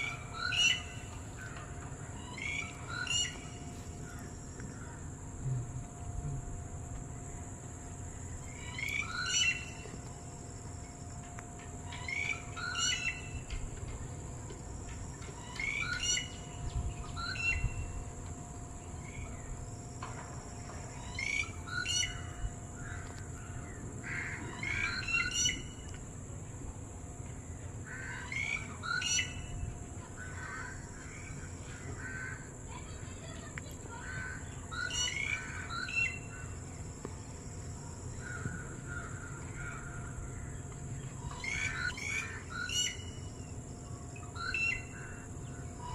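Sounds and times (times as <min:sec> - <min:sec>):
bird calling in chirpy phrases: 0:00.0 - 0:01.6, 0:08.5 - 0:09.9, 0:11.9 - 0:13.5, 0:15.4 - 0:18.0, 0:24.1 - 0:25.8, 0:32.8 - 0:36.6, 0:41.2 - 0:43.5, 0:44.2 - 0:45.9.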